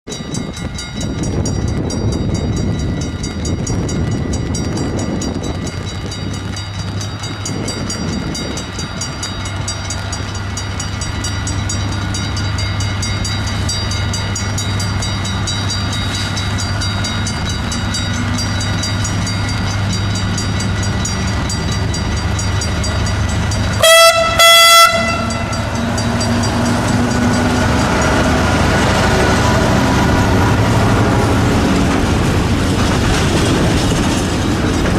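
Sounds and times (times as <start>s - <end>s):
wind on microphone: 0.1s - 34.9s
diesel locomotive engine running: 0.2s - 34.9s
locomotive horn blasts: 23.8s - 25.8s.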